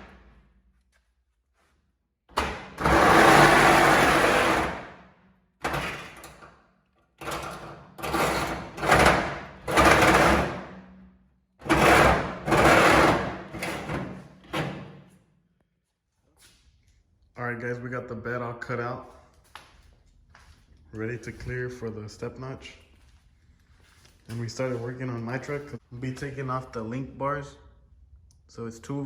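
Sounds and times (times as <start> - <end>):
power tool cutting sheet metal: 2.4 - 4.9, 7.2 - 10.6, 11.6 - 14.0.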